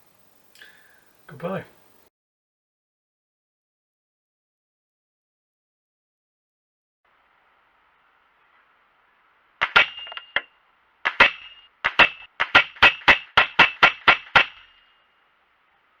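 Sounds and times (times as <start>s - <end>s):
sharp clicks with ringing tone: 9.6s - 15.0s.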